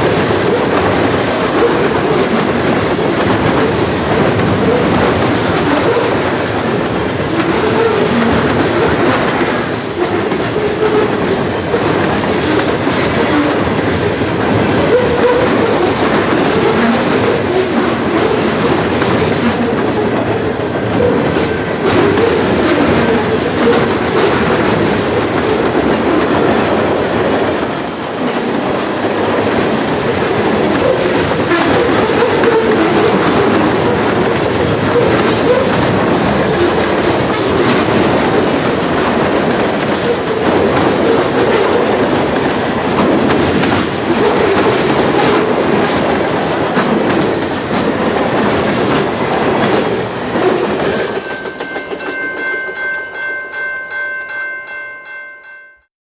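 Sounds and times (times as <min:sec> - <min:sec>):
wheels clicking over rail joints: 0:00.0 - 0:55.6
train rumbling past: 0:00.0 - 0:55.7
steady tones: 0:50.1 - 0:55.8.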